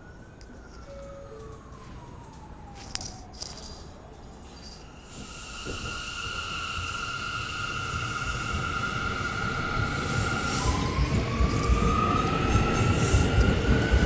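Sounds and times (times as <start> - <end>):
falling siren-like tone: 0.0 - 14.0
train wheel squeal: 3.6 - 14.0
rail hiss: 4.4 - 14.0.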